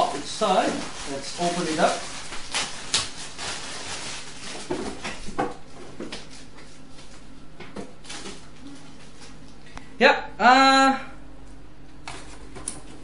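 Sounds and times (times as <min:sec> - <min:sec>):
plastic bag crinkling: 0:00.0 - 0:05.4.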